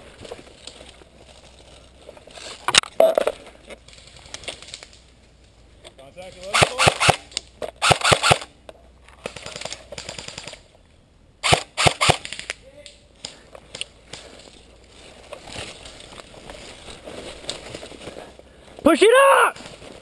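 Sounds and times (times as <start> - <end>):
airsoft guns firing: 6.5 - 8.5, 9.2 - 10.6, 11.4 - 12.5.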